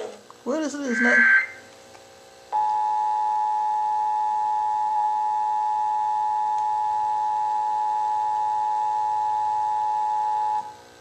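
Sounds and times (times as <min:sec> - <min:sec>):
two-tone electronic alarm: 0:00.9 - 0:01.6, 0:02.6 - 0:10.7.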